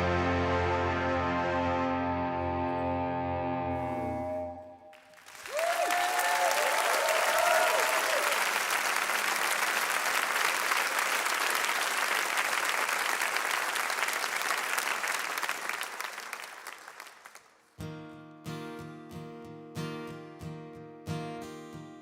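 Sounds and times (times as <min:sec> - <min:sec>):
acoustic guitar strumming: 0:00.0 - 0:04.9, 0:17.8 - 0:22.0
audience applauding: 0:04.9 - 0:17.6.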